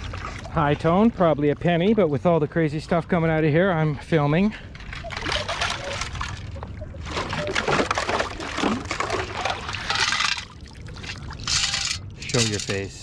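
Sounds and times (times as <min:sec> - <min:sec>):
water sloshing and pouring: 0:00.0 - 0:01.7, 0:04.4 - 0:12.9.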